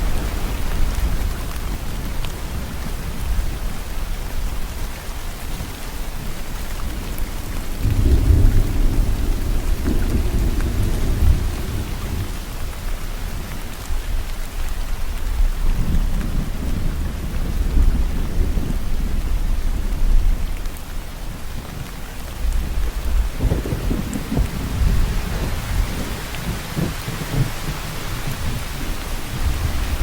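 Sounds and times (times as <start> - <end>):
heavy rain: 0.0 - 30.0
thunder rumbling: 6.2 - 13.6, 15.2 - 30.0.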